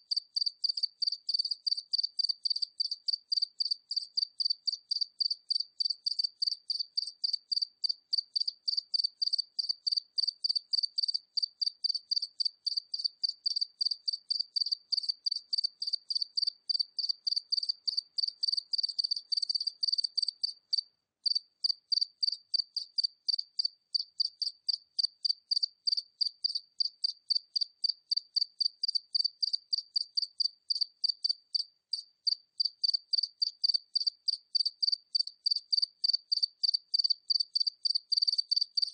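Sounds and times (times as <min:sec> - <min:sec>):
cricket chirping: 0:00.1 - 0:38.9.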